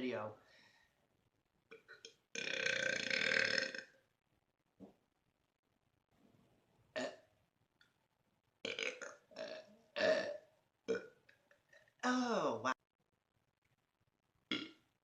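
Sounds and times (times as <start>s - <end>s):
man burping: 1.7s - 4.0s, 7.0s - 7.2s, 8.6s - 11.1s, 14.5s - 14.8s.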